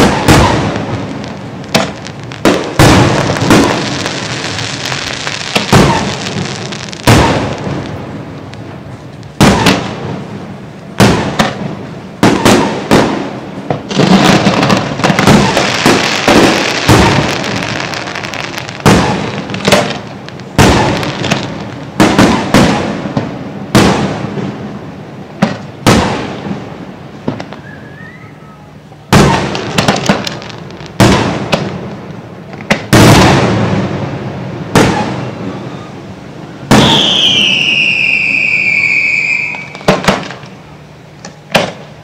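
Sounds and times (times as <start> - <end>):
firework crackle: 0.0 - 42.0
high falling whistle: 27.6 - 28.7, 35.5 - 39.9.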